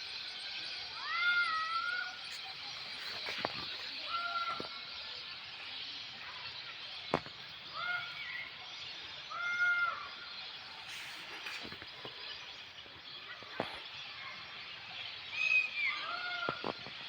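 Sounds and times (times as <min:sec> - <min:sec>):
steady outdoor hiss: 0:00.0 - 0:17.0.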